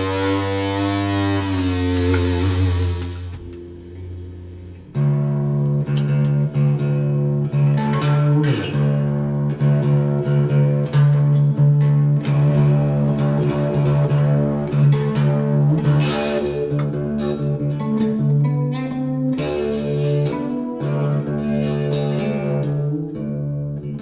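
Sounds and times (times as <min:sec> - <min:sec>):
bass line: 0:00.0 - 0:16.0
plucked guitar: 0:00.0 - 0:24.0.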